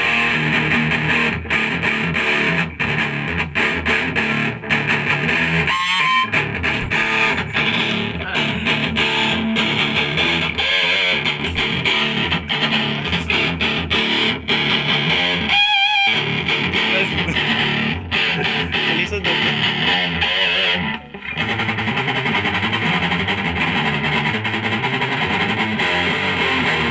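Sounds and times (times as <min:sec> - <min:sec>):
distorted electric guitar riffing: 0:00.0 - 0:26.9.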